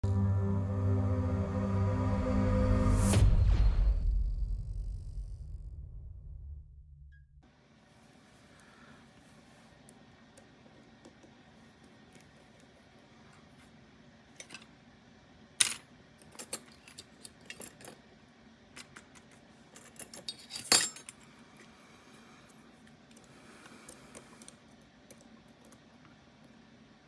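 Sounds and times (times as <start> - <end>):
small metal parts clinking: 14.4 - 14.7, 15.6 - 18.0, 18.8 - 21.3.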